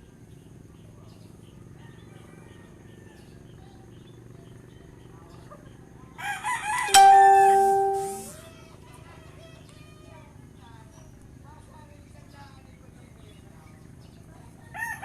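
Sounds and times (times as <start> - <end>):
rooster crowing: 6.2 - 7.2, 14.8 - 15.0.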